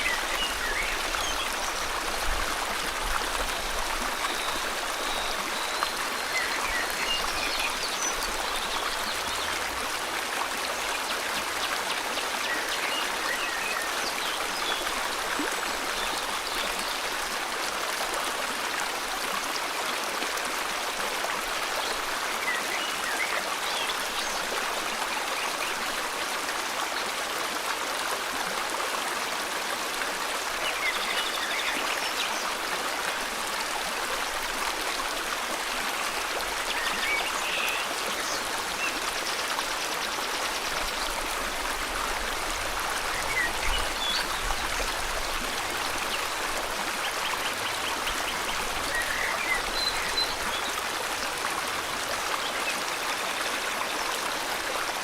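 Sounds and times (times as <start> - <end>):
river water flowing: 0.0 - 55.0.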